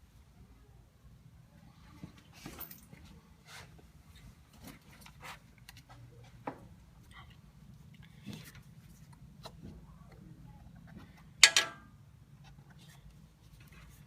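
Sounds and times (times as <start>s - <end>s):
hand tools tapping on metal: 11.4s - 11.9s
sharp metallic clank: 11.4s - 11.9s.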